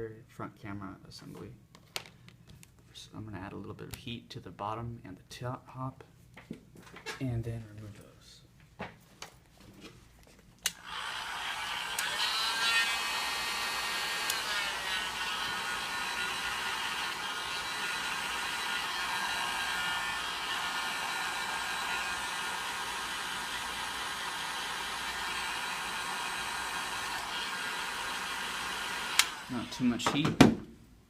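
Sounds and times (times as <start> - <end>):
heat gun blowing with fan whine: 10.6 - 30.2.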